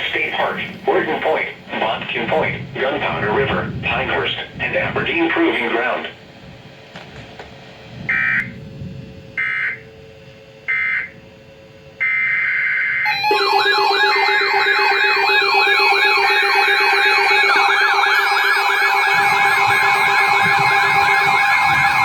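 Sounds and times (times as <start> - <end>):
sweeping siren alarm: 7.9 - 22.0
steady tone: 8.1 - 22.0
alert data tones: 12.0 - 22.0.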